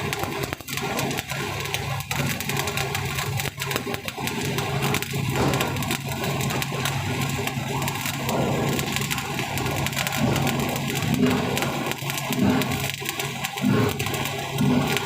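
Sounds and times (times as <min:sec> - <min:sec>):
welding arc crackling: 0:00.0 - 0:15.0.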